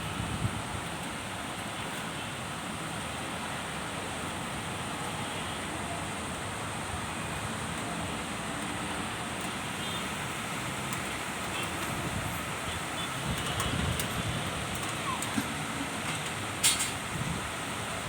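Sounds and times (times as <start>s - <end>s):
strong wind: 0.0s - 1.9s, 11.7s - 18.0s
heavy rain: 0.0s - 18.0s.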